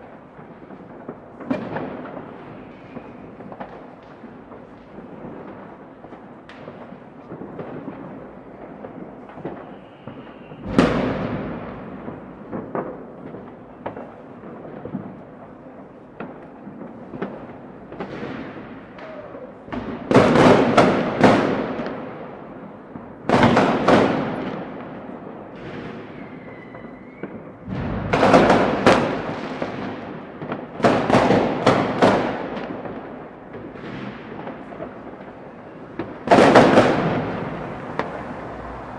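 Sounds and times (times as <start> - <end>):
distant fireworks bangs and crackling: 0.0 - 38.9
sharp firework explosions: 0.0 - 38.9
faint falling whistle: 9.6 - 10.8, 26.1 - 27.4.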